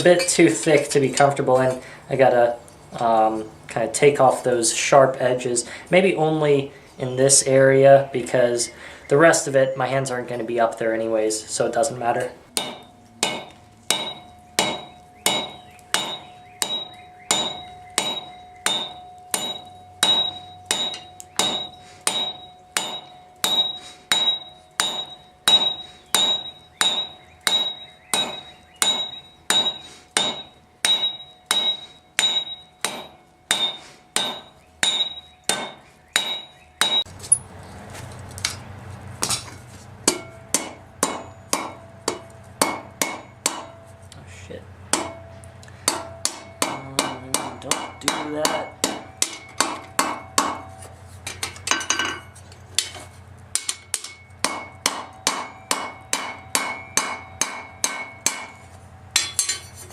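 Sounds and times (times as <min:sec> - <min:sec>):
hammer striking steel on anvil: 0:12.6 - 0:37.1, 0:39.2 - 0:44.0, 0:44.9 - 0:59.9.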